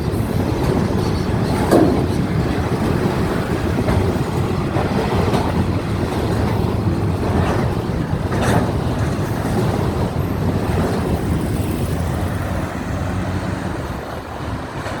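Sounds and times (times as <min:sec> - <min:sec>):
diesel train rumbling past: 0:00.0 - 0:15.0.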